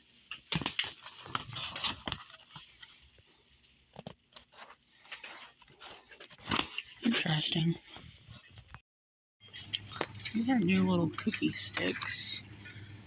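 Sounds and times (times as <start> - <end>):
paper rustling: 0.1 - 8.8
pages turning: 0.2 - 7.3.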